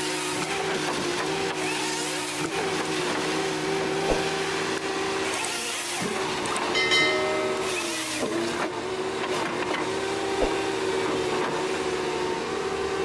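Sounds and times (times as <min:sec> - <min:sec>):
machinery whining: 0:03.2 - 0:13.0.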